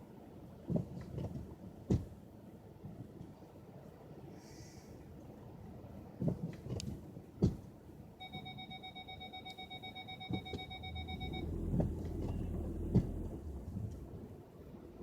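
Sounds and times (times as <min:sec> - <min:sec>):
car warning chime beeping: 0:08.2 - 0:14.0
low rumble: 0:10.6 - 0:14.4.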